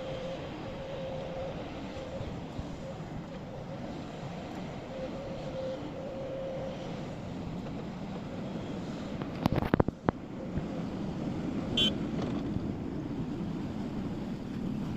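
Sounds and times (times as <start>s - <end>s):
excavator diesel engine: 0.0s - 9.5s
faint whine: 0.0s - 11.0s.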